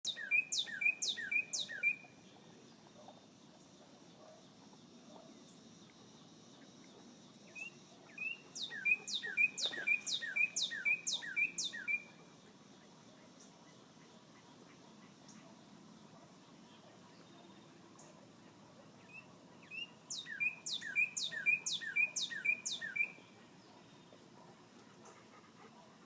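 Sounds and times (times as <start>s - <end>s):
songbird whistling: 0.1s - 2.1s, 7.6s - 12.1s, 19.1s - 23.2s.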